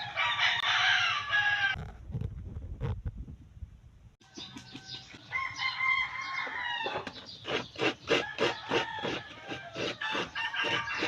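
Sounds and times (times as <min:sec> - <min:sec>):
rooster crowing: 0:00.0 - 0:01.8, 0:04.2 - 0:07.1, 0:08.2 - 0:11.0.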